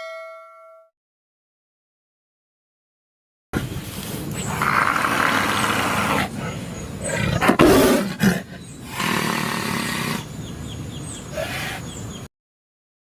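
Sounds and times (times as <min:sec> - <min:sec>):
tiger roaring: 0:04.3 - 0:10.4.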